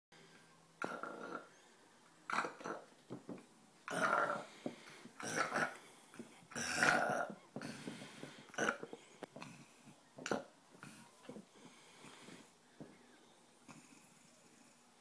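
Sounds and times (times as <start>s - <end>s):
rasping snores: 0.8s - 1.6s, 3.9s - 4.6s, 6.5s - 7.9s.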